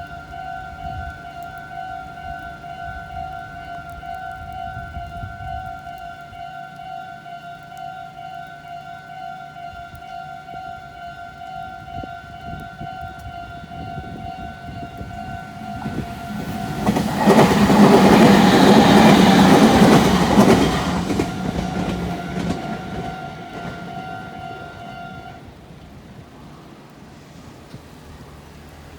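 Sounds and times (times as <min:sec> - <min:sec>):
train rushing and rumbling: 0:12.1 - 0:28.9
railroad crossing bell ringing: 0:13.7 - 0:25.4.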